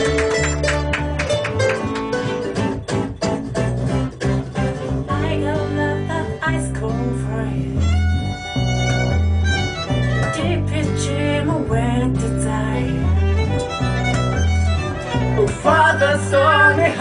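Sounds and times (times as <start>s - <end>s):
fiddle melody: 0.0s - 17.0s
guitar: 0.0s - 17.0s
low bass notes: 0.0s - 17.0s.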